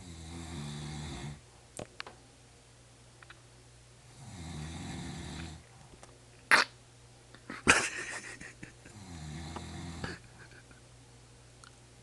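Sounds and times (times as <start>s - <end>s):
person snoring: 0.0s - 1.4s, 4.1s - 5.6s, 8.9s - 10.2s.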